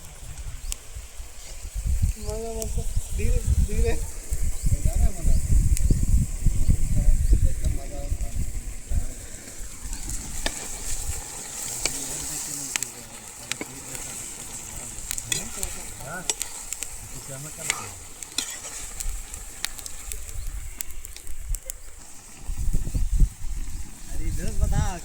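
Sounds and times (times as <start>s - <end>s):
offal sizzling in a pan: 0.0s - 25.0s
stirring clicks and scrapes: 9.4s - 22.4s.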